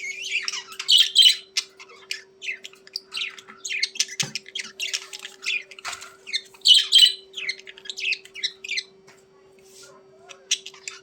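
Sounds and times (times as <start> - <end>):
budgerigars chattering and squawking: 0.0 - 9.0, 10.2 - 11.0
faint steady hum: 0.0 - 11.0.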